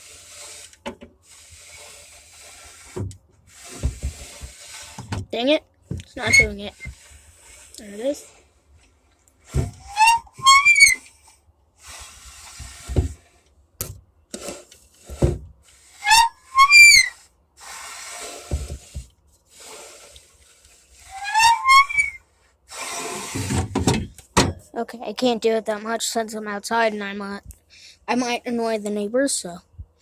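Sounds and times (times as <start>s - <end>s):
hissing or scraping: 0.0s - 5.2s, 6.2s - 8.7s, 9.4s - 13.4s, 14.3s - 23.9s
appliance high whistling squeals: 16.0s - 17.1s, 21.1s - 22.2s.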